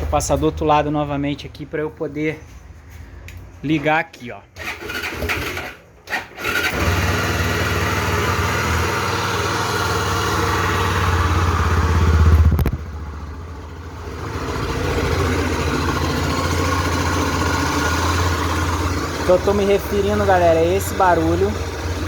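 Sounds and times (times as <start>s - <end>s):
motorcycle engine running: 6.4s - 22.0s.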